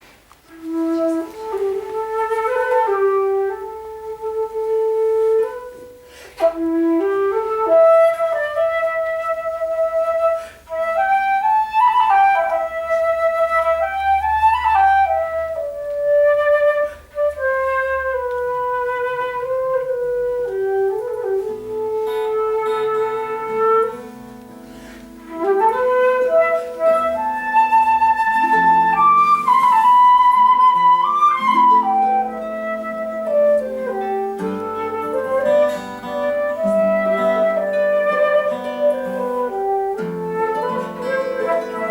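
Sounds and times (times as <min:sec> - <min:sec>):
flute playing folk melody: 0:00.4 - 0:41.9.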